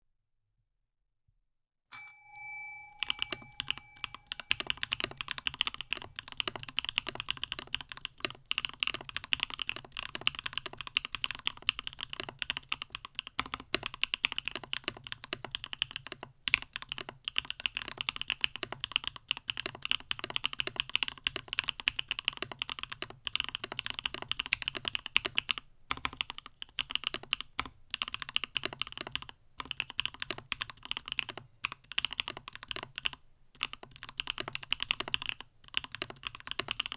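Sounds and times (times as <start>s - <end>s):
short ringing chime: 1.9s - 5.0s
mechanical keyboard typing: 3.0s - 36.9s.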